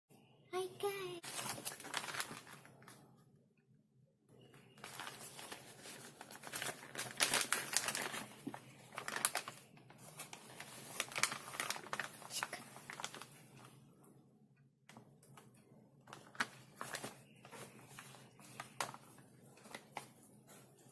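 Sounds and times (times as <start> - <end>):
food packaging crinkling: 1.2 - 3.0, 4.8 - 13.8, 16.1 - 20.9.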